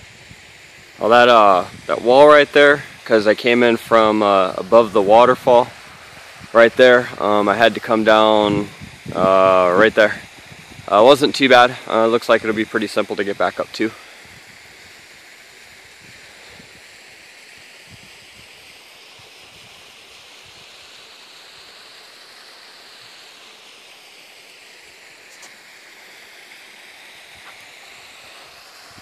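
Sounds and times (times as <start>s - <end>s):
waterfall pouring into pool: 0.0s - 29.0s.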